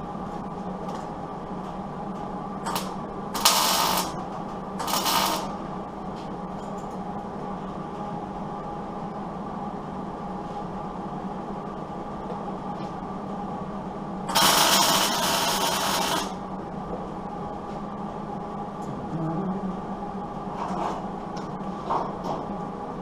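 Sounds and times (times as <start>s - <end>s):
steady background hum: 0.0s - 23.0s
welder burst: 4.8s - 5.5s, 14.3s - 16.3s.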